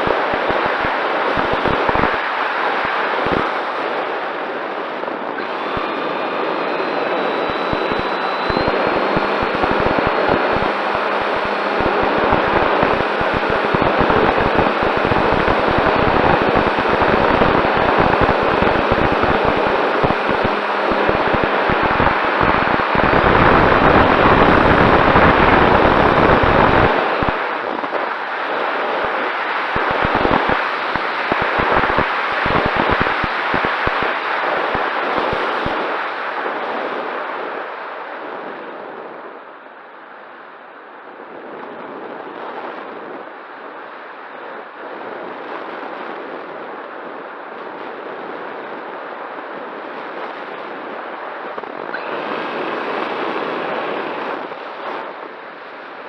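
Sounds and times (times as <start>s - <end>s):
wind buffeting microphone: 3.2s - 37.6s.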